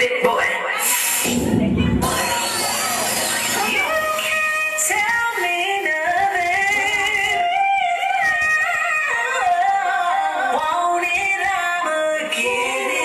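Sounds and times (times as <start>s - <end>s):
music track: 1.2s - 5.9s.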